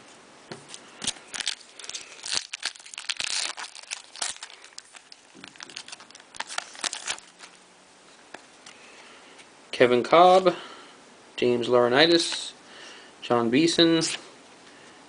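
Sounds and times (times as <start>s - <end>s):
wrapper crinkling and tearing: 1.0s - 7.6s.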